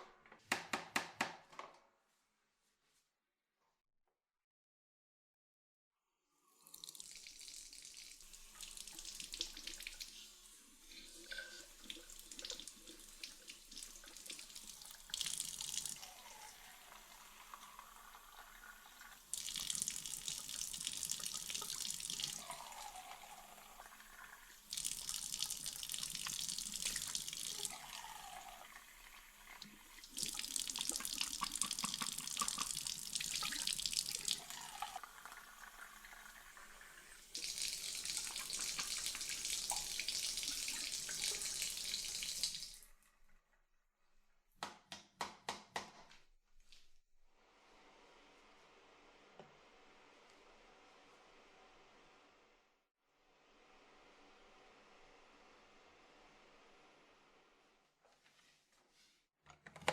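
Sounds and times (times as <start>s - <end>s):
tap water running and splashing: 6.6s - 43.3s.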